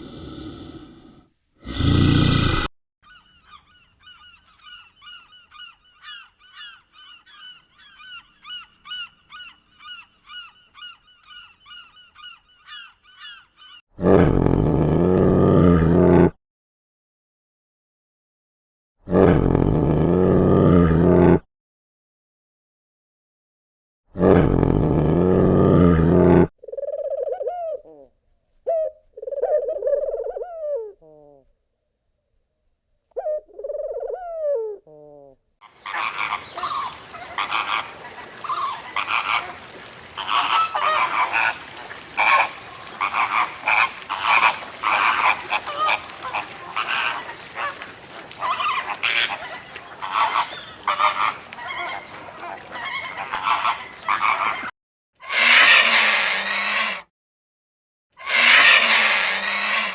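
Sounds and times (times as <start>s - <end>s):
loud rough animal call: 0.0s - 2.7s, 35.6s - 57.1s, 58.2s - 59.9s
chorus of short repeated calls: 35.6s - 54.7s
drawn-out rising and falling calls: 35.6s - 54.7s, 58.3s - 59.9s.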